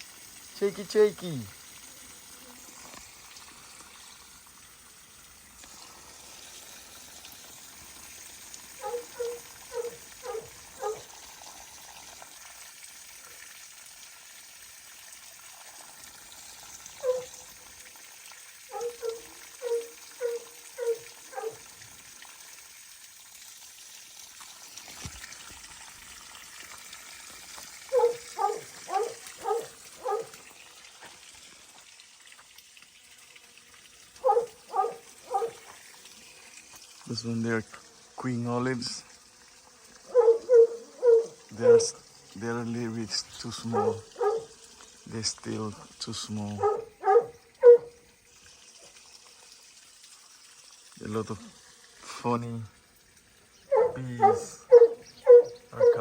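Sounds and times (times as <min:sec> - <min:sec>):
dog barking: 0:08.8 - 0:11.1, 0:17.0 - 0:17.4, 0:18.7 - 0:21.7, 0:27.9 - 0:30.4, 0:34.2 - 0:35.6, 0:40.1 - 0:42.0, 0:43.7 - 0:44.5, 0:46.6 - 0:48.0, 0:53.7 - 0:56.0.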